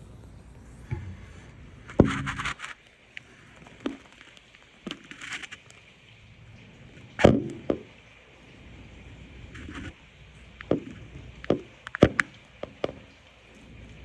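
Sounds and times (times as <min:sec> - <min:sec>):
faint clicks: 0:00.0 - 0:06.0, 0:09.6 - 0:14.0
steady background hiss: 0:00.0 - 0:14.0.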